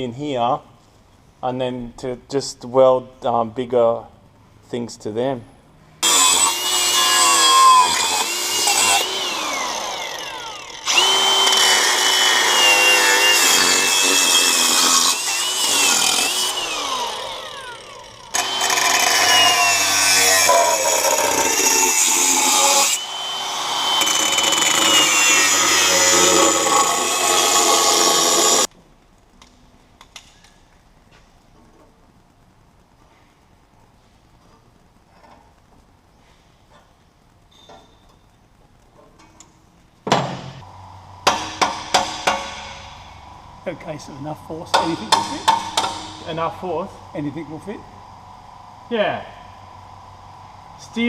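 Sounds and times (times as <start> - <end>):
angle grinder cutting steel pipe: 6.0 - 28.7.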